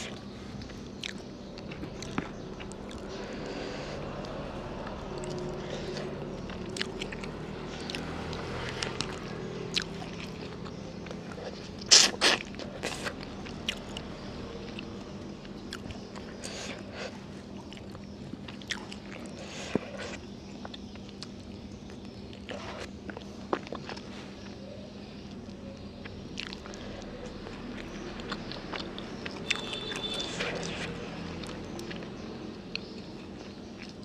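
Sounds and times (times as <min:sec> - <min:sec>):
chewing and biting noodles: 0:00.0 - 0:24.1, 0:25.3 - 0:34.0
loud crunches: 0:05.2 - 0:13.8.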